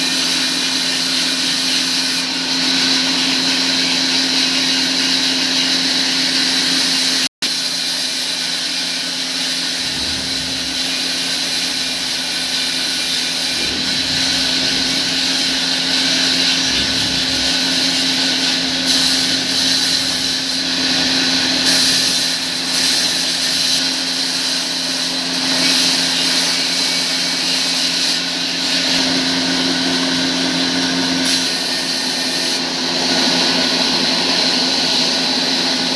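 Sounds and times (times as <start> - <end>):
sawmill machinery whirring: 0.0 - 35.9
high whine: 9.6 - 21.7.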